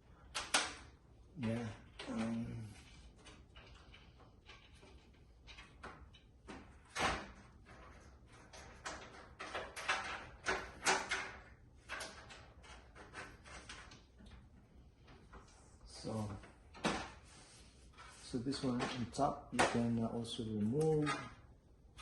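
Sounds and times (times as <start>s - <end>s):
computer case parts clattering: 3.2s - 14.5s, 16.0s - 17.3s, 18.0s - 22.0s.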